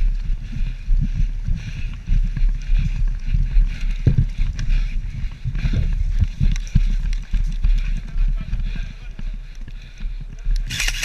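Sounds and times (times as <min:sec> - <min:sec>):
wind rumbling on microphone: 0:00.0 - 0:11.0.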